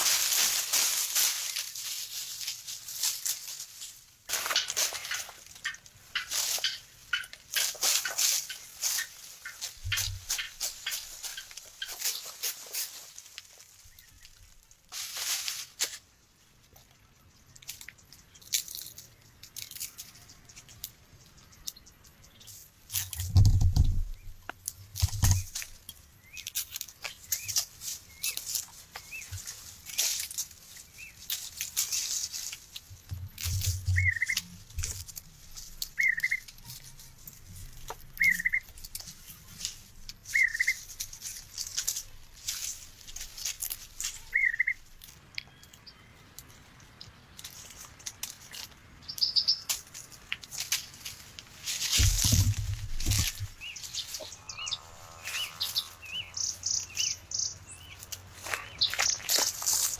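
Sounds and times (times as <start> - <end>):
clicks and rustling: 0.0 - 13.6
crunching dry leaves and twigs: 0.0 - 59.9
bird whistled call: 40.3 - 40.8, 44.3 - 44.8.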